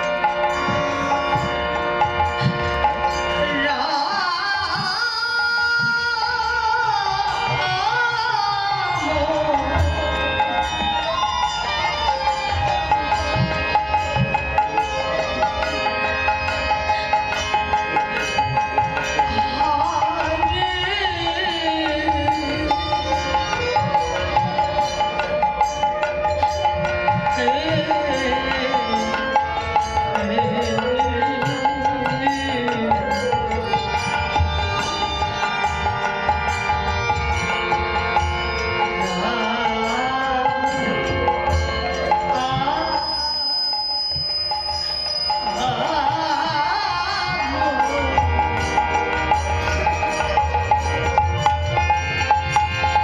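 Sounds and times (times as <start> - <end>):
sustained held tones: 28.2 - 46.8.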